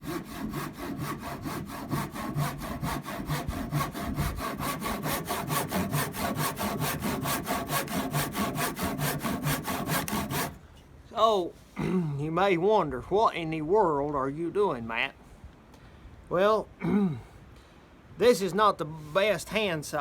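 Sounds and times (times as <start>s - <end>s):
handsaw cutting wood: 0.0s - 10.6s.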